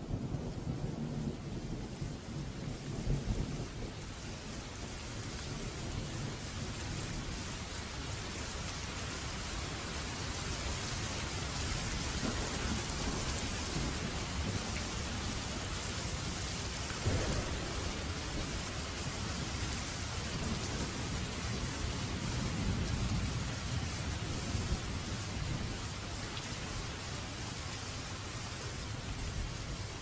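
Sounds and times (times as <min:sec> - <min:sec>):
heavy rain: 0:00.0 - 0:30.0
thunder crack: 0:17.0 - 0:18.6
thunder rumble: 0:17.0 - 0:25.8.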